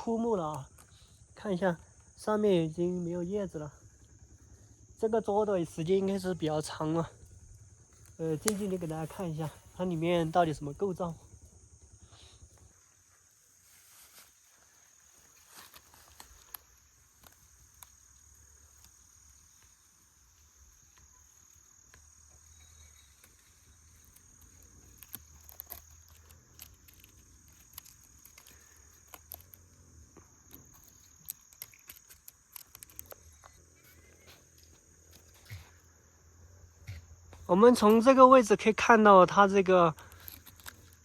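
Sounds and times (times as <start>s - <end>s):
high-pitched insect chirring: 0.0s - 14.0s, 14.7s - 41.0s
sharp clicks and crackles: 7.2s - 9.5s, 23.1s - 35.7s, 39.9s - 41.0s.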